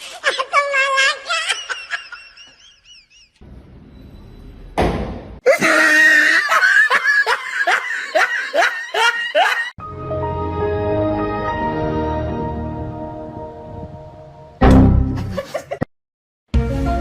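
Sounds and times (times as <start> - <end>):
loud laughter: 0.0 - 3.4, 5.5 - 9.8, 15.2 - 15.8
background music: 9.8 - 15.4, 16.5 - 17.0.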